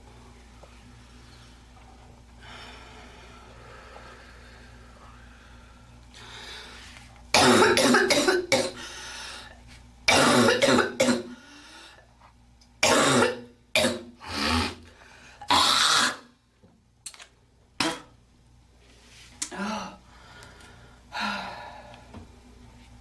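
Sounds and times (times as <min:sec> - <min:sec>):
girl coughing: 0:07.4 - 0:08.8, 0:10.1 - 0:11.4, 0:12.8 - 0:14.1.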